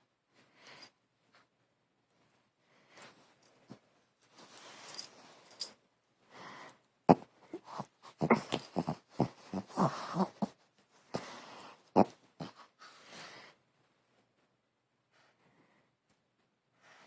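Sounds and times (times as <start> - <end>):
dog making pig-like noises: 7.1 - 10.6, 11.9 - 12.7.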